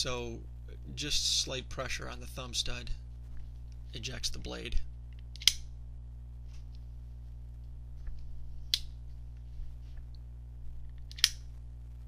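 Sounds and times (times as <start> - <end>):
steady low hum: 0.0 - 12.0
folding knife clicking: 11.1 - 11.4.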